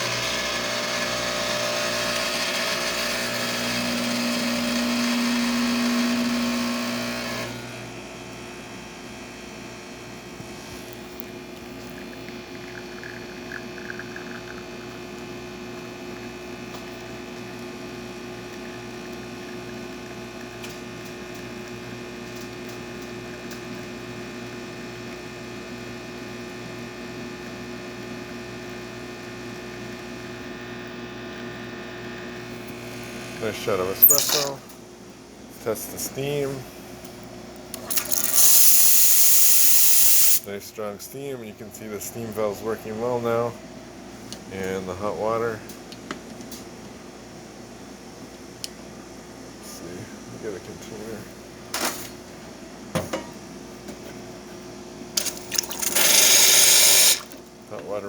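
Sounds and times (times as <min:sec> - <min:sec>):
espresso machine pump humming: 0:00.0 - 0:08.4, 0:09.5 - 0:24.2, 0:28.1 - 0:34.6, 0:37.6 - 0:40.5, 0:55.1 - 0:57.8.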